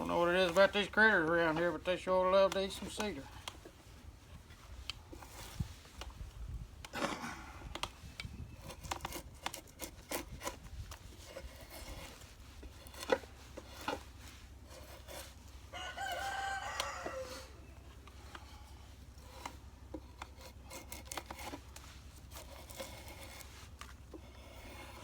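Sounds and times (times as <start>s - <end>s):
bark scraped and torn off log: 8.6s - 16.5s, 19.2s - 25.0s
rooster crowing: 15.7s - 17.8s.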